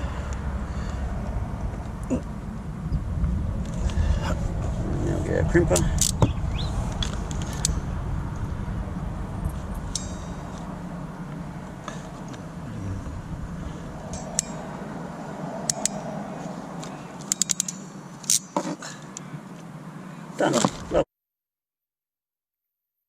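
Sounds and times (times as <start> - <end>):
wire crimper clicking: 15.7 - 16.0, 17.2 - 18.5.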